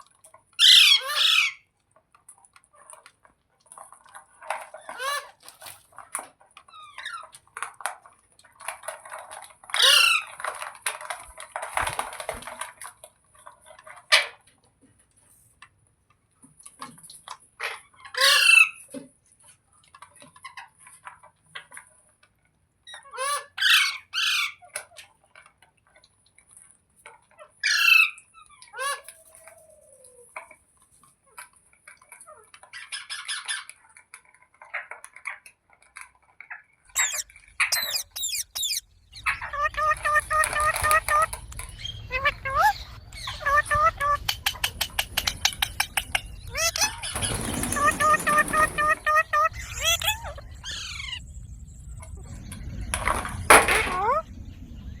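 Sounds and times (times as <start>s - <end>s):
parrot chattering and squawking: 0.6s - 1.6s, 17.6s - 18.8s, 27.6s - 29.1s, 36.5s - 51.2s, 53.7s - 54.3s
parrot screeching: 0.6s - 1.6s, 18.1s - 18.8s, 37.0s - 44.6s, 46.5s - 51.2s.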